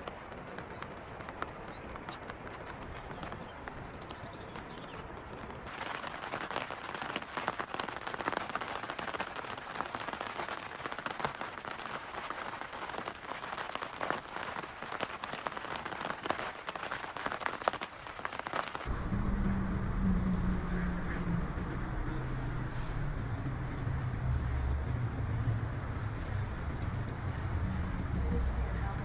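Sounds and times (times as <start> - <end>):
rain drops hitting hard surfaces: 0.0 - 29.0
low steady rumble: 18.9 - 29.0.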